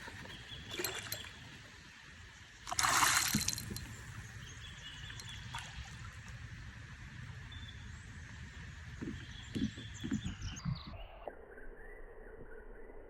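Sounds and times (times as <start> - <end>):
water splashing and trickling: 0.1 - 1.7, 2.7 - 4.2
loud water splash: 2.7 - 3.9.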